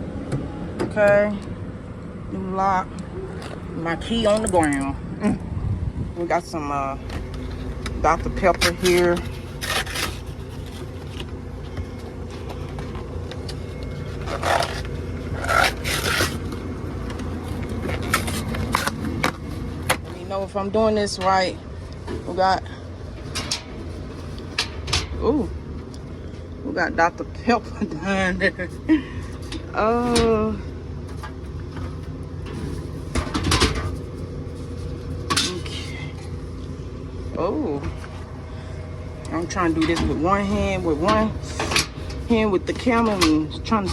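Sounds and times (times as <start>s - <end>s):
vending machine low hum: 0.0s - 43.9s
cans scraping sliding: 8.9s - 11.3s, 14.1s - 16.6s.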